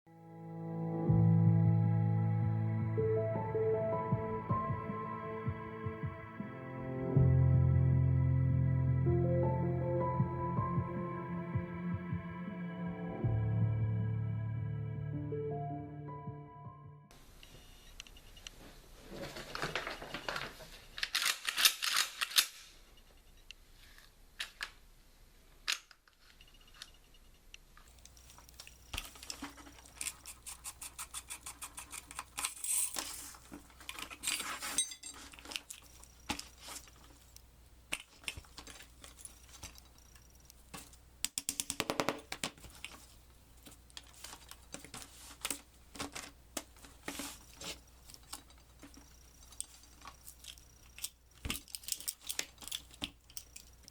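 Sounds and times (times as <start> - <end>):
shotgun parts clicking and sliding: 21.0 - 22.8, 43.9 - 53.9
metal parts rattling: 31.9 - 37.2, 47.5 - 53.9.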